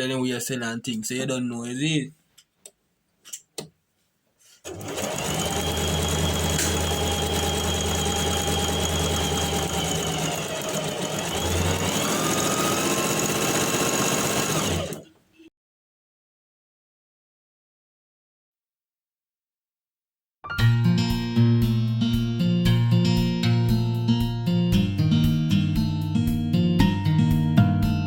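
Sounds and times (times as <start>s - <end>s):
electric sewing machine running: 4.7s - 15.1s.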